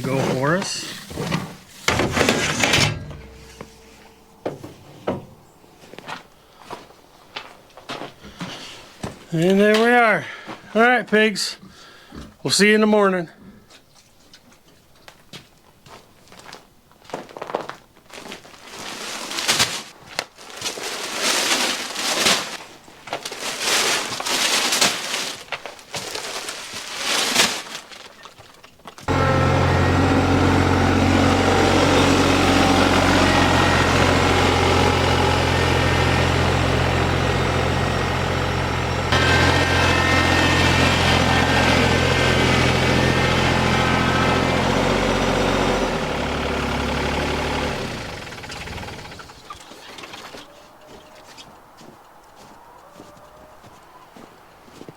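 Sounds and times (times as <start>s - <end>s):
rustling and clatter: 0.0s - 9.3s, 15.9s - 29.1s, 47.8s - 52.0s
vehicle engine running: 1.9s - 5.6s, 29.1s - 49.6s.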